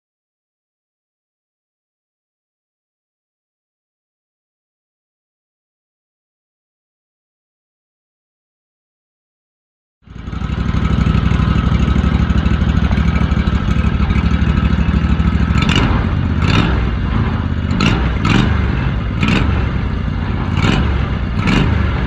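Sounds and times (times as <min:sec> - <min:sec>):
engine running loud: 0:10.0 - 0:22.0.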